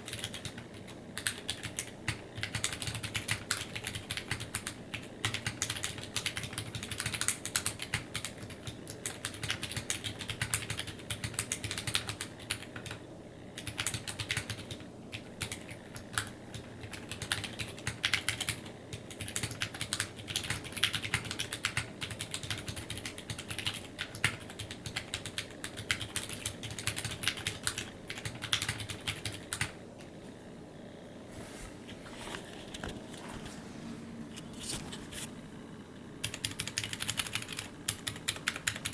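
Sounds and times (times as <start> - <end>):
mechanical keyboard typing: 0.0 - 13.0, 13.6 - 29.8, 36.2 - 38.9.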